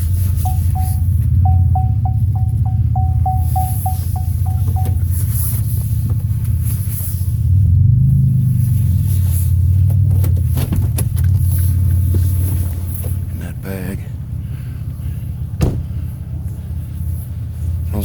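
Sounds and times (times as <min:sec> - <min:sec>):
dashboard warning chime beeping: 0:00.0 - 0:05.6
van engine rumble: 0:00.0 - 0:18.0.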